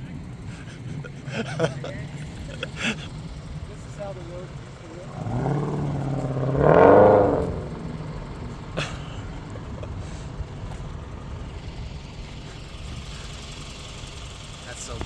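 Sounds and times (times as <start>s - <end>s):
car engine revving and rumbling: 0.0s - 15.0s.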